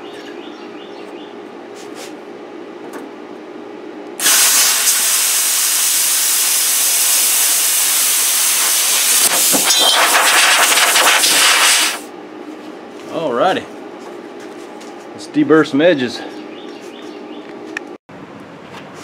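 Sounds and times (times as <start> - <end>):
plasma cutter hissing: 4.2 - 12.1.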